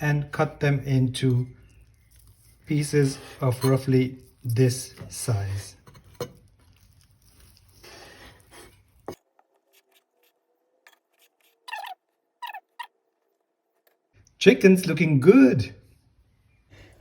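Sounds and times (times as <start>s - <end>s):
faint squeaky sounds: 9.7s - 13.8s.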